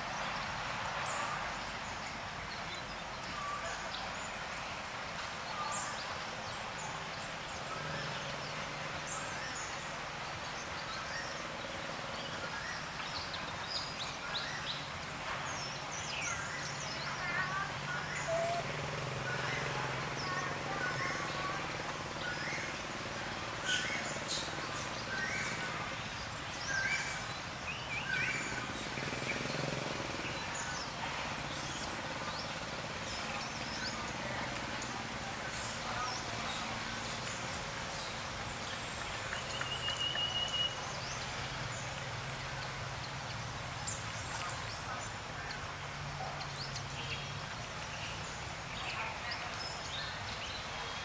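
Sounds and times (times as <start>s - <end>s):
bird chirps and tweets: 10.5s - 45.6s.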